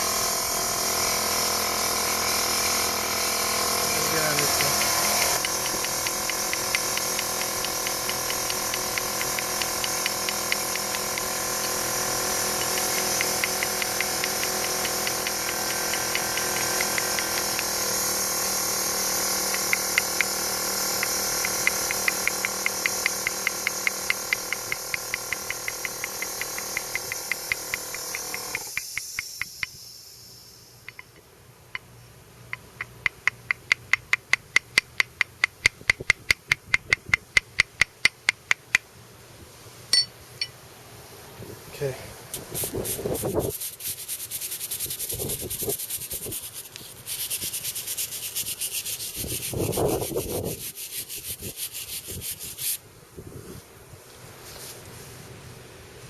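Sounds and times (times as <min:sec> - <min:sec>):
pump ticking: 0:00.0 - 0:29.8, 0:32.5 - 0:38.8
water spray hissing: 0:03.0 - 0:31.0, 0:41.8 - 0:52.8.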